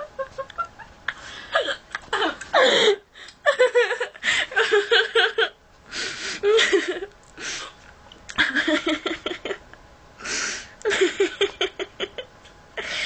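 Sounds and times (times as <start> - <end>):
girl laughing and whimpering: 0.0 - 5.6, 6.3 - 7.8.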